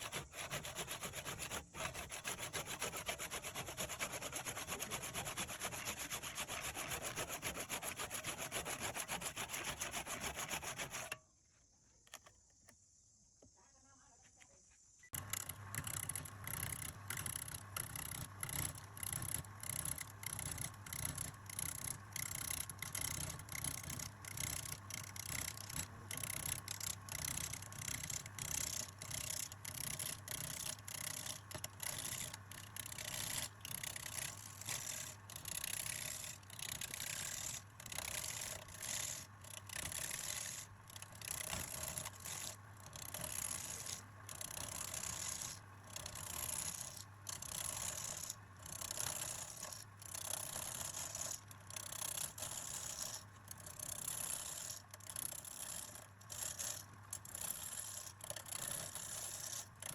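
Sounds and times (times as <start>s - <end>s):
lathe tool scraping wood: 0.0s - 11.2s.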